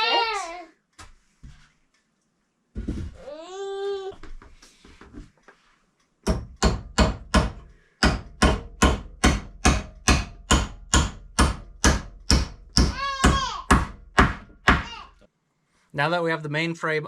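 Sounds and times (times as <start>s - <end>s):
hammer striking wood: 6.2s - 15.0s.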